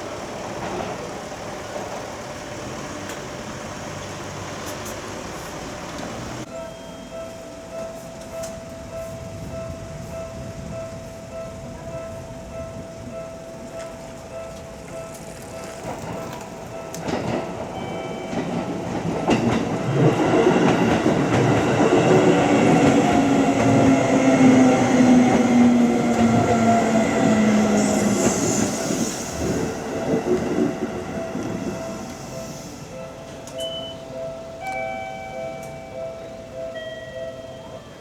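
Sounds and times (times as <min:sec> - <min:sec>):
train wheel clatter: 0:00.0 - 0:06.6, 0:07.2 - 0:37.6
crossing warning bell ringing: 0:00.0 - 0:38.0
train motor whine: 0:14.5 - 0:36.2.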